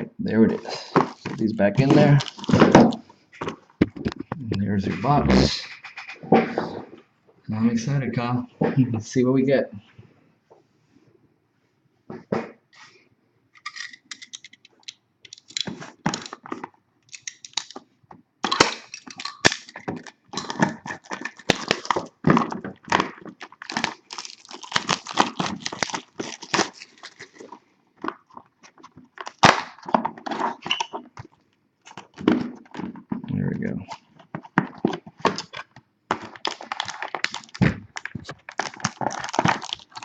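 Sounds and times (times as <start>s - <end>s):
packaging crinkling and tearing: 0.7s - 4.3s, 15.3s - 33.0s, 33.9s - 40.0s.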